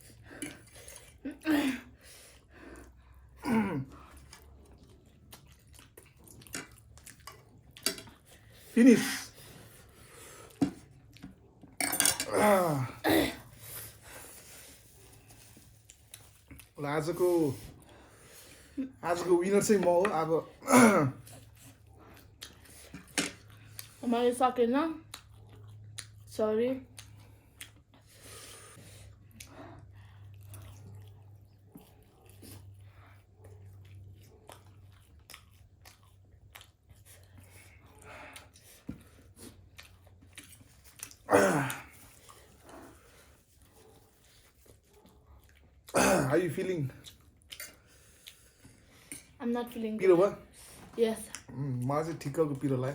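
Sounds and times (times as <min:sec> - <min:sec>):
chewing noodles: 0:00.0 - 0:12.8, 0:13.4 - 0:52.9
tableware clink: 0:11.8 - 0:12.4
wet mouth clicks and smacks: 0:25.0 - 0:26.3, 0:26.9 - 0:28.0.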